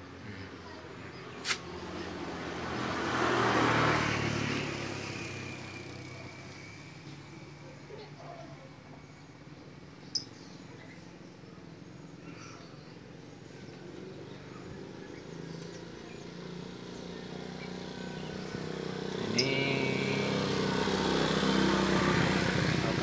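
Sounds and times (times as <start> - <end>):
passing vehicle engine: 0.0 - 8.2, 13.4 - 23.0.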